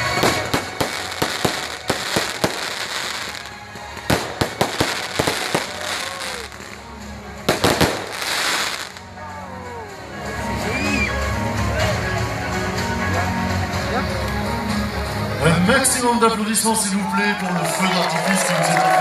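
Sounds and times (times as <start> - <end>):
fireworks bangs: 0.0 - 6.8, 7.5 - 9.0
fireworks crackling: 0.0 - 9.2
music playing: 0.0 - 19.0.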